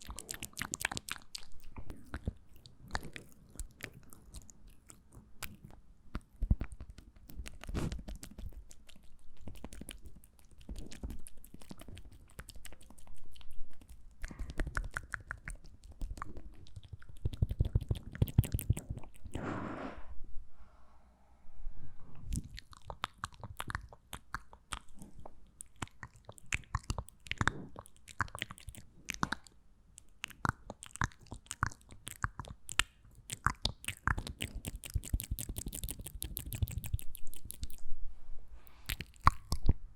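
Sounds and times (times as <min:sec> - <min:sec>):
wet mouth clicks and smacks: 0:00.0 - 0:19.4, 0:22.3 - 0:37.8, 0:38.7 - 0:39.8
breathy rush: 0:19.4 - 0:21.3.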